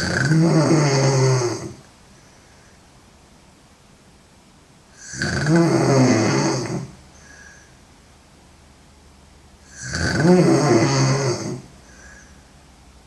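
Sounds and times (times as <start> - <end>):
woman snoring loudly: 0.0 - 1.8, 5.0 - 7.0, 9.7 - 11.7.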